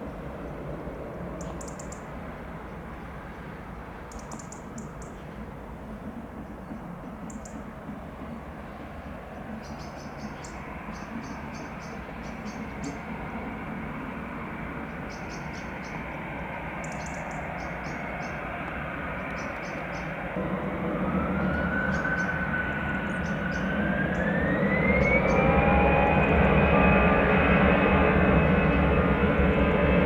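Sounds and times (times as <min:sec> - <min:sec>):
jet engines spooling up: 0:10.6 - 0:30.0
rising engine whine: 0:10.6 - 0:30.0.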